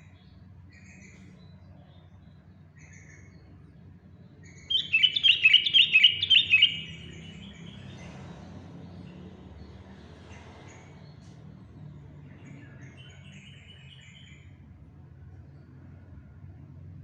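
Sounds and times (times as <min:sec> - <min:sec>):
bird singing fast phrase: 0:04.5 - 0:08.2
faint short bird calls: 0:04.7 - 0:07.6.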